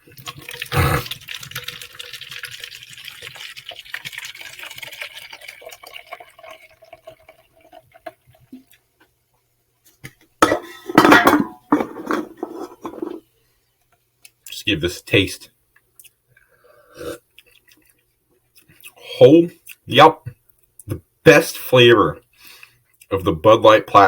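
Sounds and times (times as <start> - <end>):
liquid splashing and fizzing: 0.0 - 8.7.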